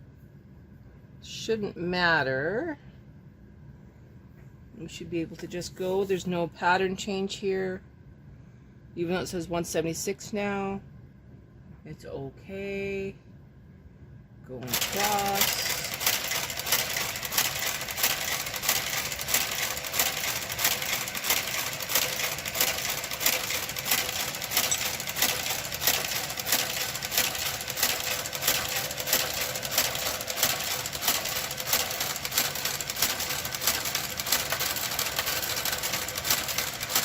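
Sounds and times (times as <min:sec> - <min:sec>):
knitting machine carriage clicking: 0:14.6 - 0:37.0.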